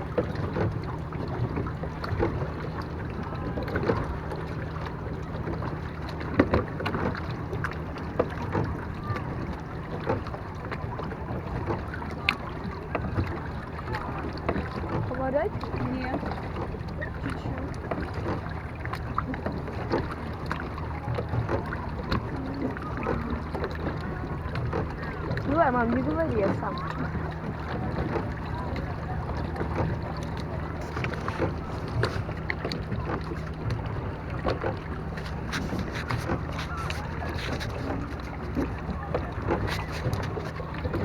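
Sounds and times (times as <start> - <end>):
water lapping against boat hull: 0.0 - 41.0
light clicks and knocks: 11.3 - 41.0.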